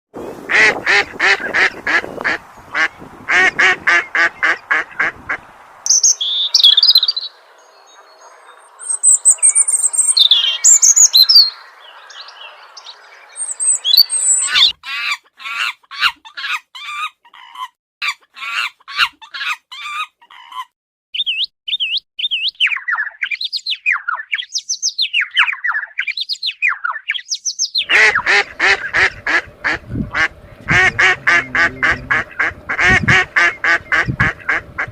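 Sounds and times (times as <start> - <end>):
bird calls: 0.5 - 17.7, 21.2 - 34.9
warbling bird call: 5.9 - 14.8, 27.8 - 34.9.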